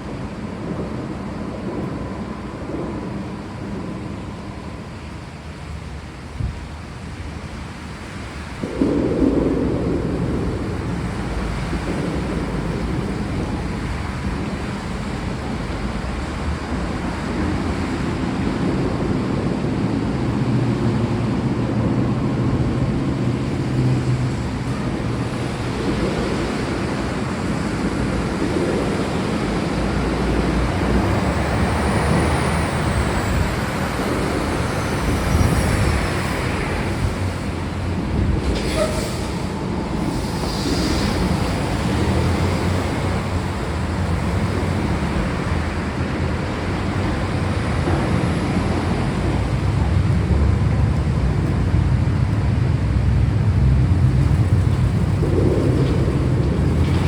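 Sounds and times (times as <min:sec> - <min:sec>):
low rumble of thunder: 0:00.0 - 0:57.0
steady rain: 0:00.0 - 0:57.0.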